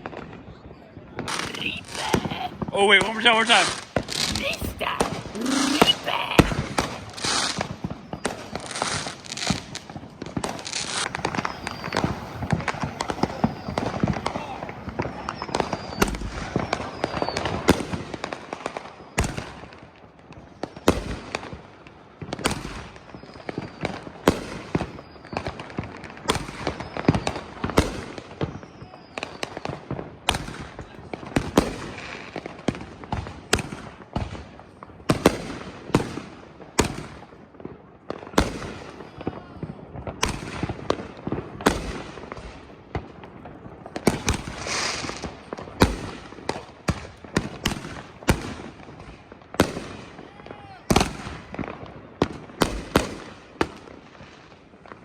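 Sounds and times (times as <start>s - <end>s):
fireworks banging: 1.2s - 18.7s, 39.6s - 50.2s
fireworks crackling: 1.2s - 55.0s.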